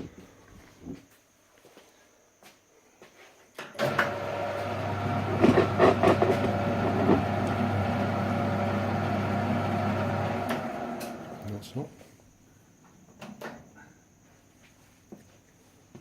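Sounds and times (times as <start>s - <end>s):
metal lathe running: 3.8s - 11.4s.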